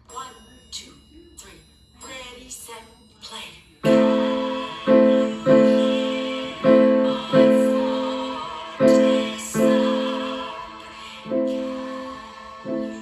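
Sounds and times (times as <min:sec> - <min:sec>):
slow piano melody: 0:03.8 - 0:10.6, 0:11.3 - 0:12.0, 0:12.7 - 0:13.0.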